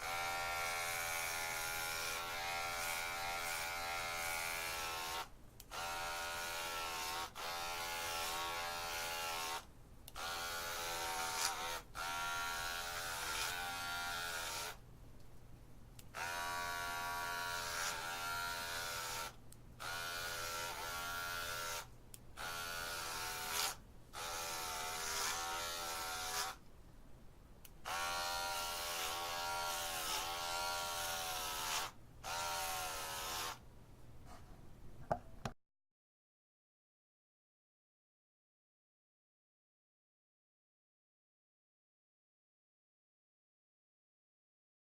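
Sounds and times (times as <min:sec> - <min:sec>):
electric hair clippers buzzing: 0:00.0 - 0:09.6, 0:10.2 - 0:14.8, 0:16.1 - 0:26.6, 0:27.8 - 0:33.6.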